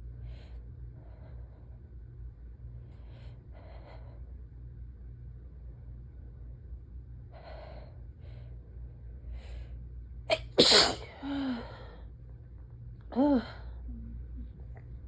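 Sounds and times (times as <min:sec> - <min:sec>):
loud sneeze: 0:10.3 - 0:11.1.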